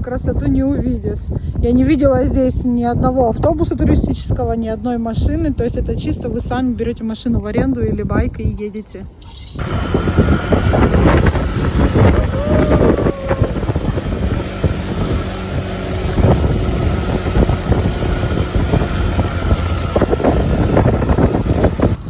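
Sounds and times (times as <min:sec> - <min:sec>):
wind buffeting microphone: 0:00.0 - 0:22.0
moped engine running: 0:09.6 - 0:22.0.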